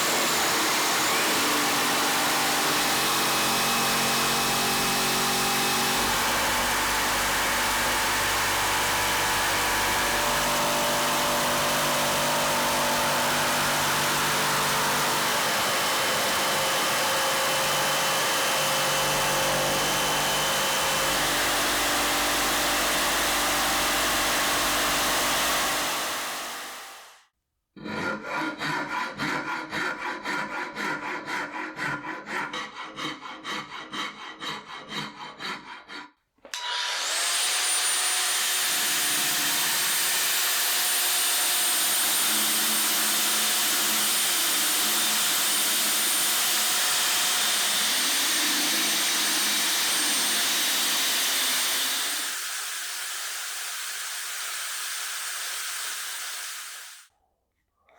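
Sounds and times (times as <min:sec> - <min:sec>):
power tool high whine: 0:00.0 - 0:27.2, 0:36.6 - 0:57.1.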